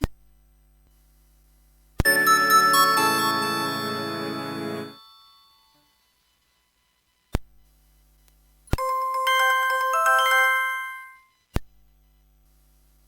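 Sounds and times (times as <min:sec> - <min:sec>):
bell-like phone ringtone: 0:02.0 - 0:06.0, 0:08.8 - 0:11.3.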